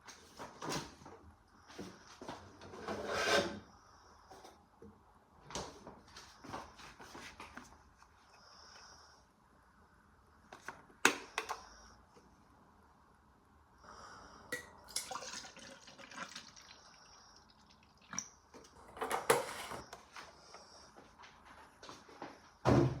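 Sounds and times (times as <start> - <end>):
water trickling and dripping: 14.9 - 18.4.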